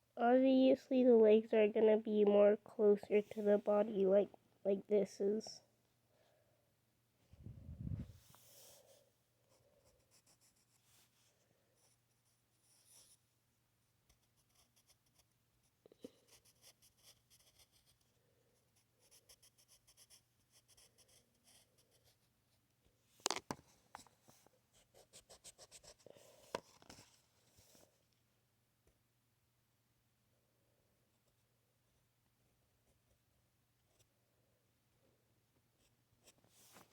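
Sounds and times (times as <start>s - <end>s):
pencil scratching on paper: 12.6s - 13.2s, 14.1s - 15.3s, 16.2s - 18.1s, 18.8s - 22.2s, 24.8s - 26.0s.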